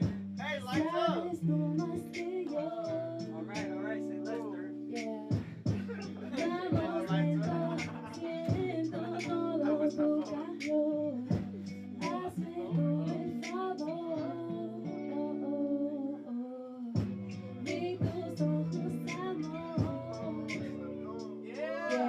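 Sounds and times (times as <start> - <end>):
backing track with chords and beat: 0.0 - 1.1, 1.8 - 12.4, 13.0 - 13.9, 17.0 - 22.0
person singing: 0.7 - 3.8, 5.0 - 22.0.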